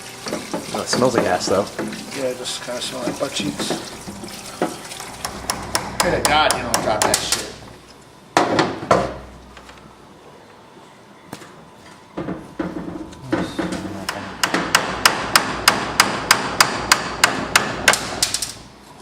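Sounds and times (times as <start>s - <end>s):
hammer tapping on metal: 5.2s - 7.6s, 12.2s - 18.1s.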